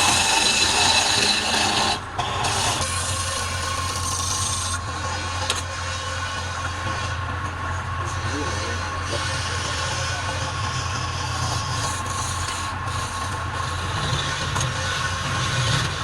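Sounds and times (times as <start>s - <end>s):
tool rasping on wood: 0.0s - 4.8s, 8.5s - 16.0s
wood lathe motor hum: 0.0s - 16.0s.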